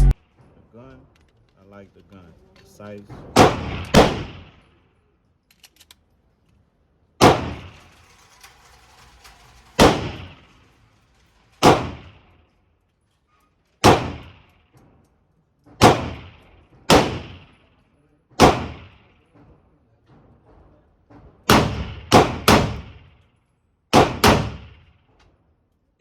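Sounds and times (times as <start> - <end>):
pistol shots with echo: 3.4 - 4.7, 7.2 - 7.8, 9.8 - 10.4, 11.6 - 12.3, 13.8 - 14.7, 15.8 - 17.8, 18.4 - 19.2, 21.5 - 23.2, 23.9 - 24.9.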